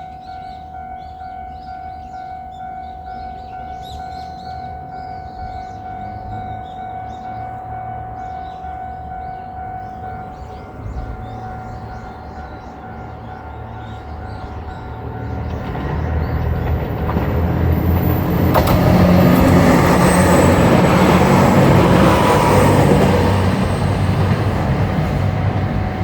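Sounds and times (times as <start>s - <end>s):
crossing warning bell ringing: 0.0s - 26.0s
diesel train engines: 0.0s - 26.0s
train wheels on rails: 9.8s - 26.0s
sharp clack: 17.9s - 19.5s.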